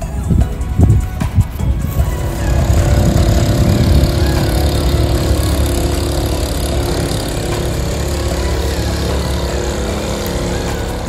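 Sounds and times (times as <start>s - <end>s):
engine running: 0.0s - 11.0s.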